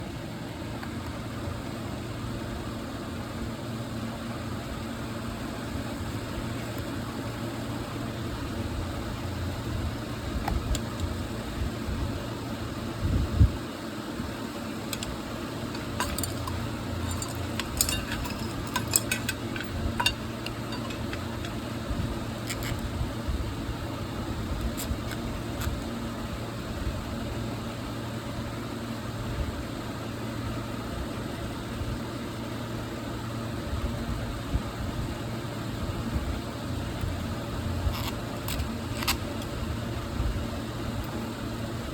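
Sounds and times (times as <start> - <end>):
exhaust fan humming: 0.0 - 41.9
light clicks and rattles: 14.9 - 21.6.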